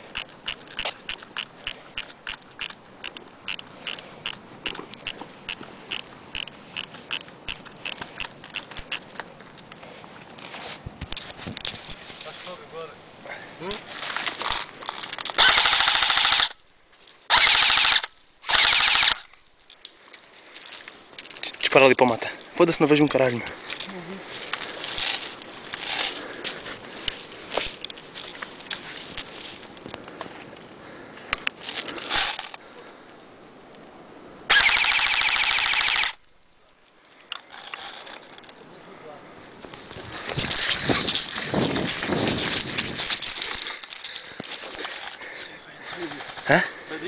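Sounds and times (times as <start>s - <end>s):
rustling crackles: 0.0s - 47.0s
airsoft gun full-auto bursts: 15.4s - 16.6s, 17.3s - 19.3s, 34.5s - 36.2s.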